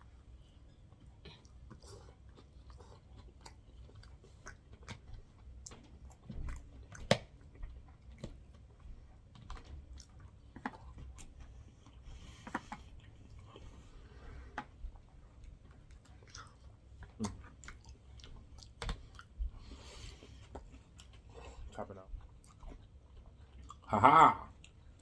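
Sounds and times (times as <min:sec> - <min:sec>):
close chewing: 0:00.0 - 0:25.0
wet mouth clicks: 0:16.2 - 0:19.3.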